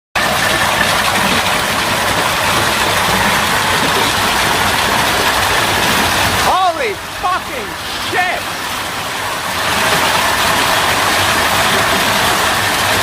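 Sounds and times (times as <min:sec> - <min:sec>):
hail pelting car roof: 0:00.2 - 0:06.7.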